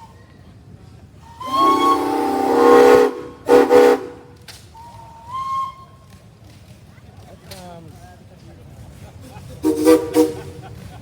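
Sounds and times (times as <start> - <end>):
thin steam whistle: 1.2 - 6.0, 9.6 - 10.5.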